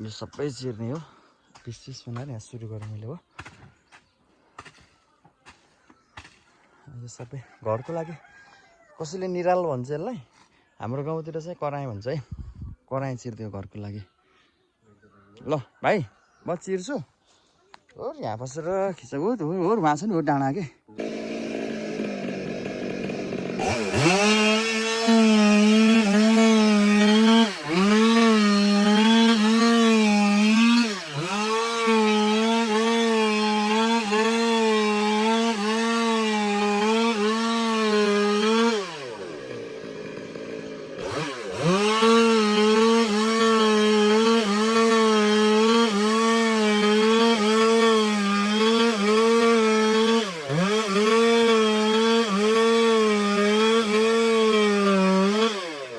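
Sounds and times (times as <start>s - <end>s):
chainsaw cutting log: 20.9s - 55.9s.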